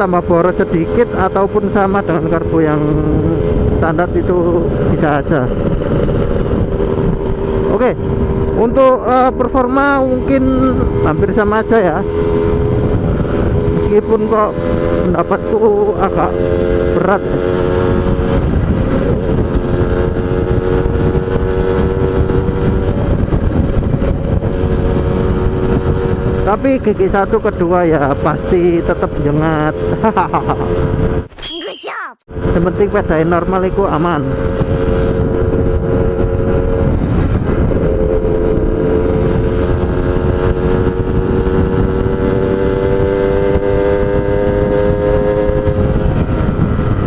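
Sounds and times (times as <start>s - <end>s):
motorcycle engine running: 0.0s - 31.2s, 32.3s - 47.0s
wind rumble on microphone: 0.0s - 31.3s, 32.3s - 47.0s.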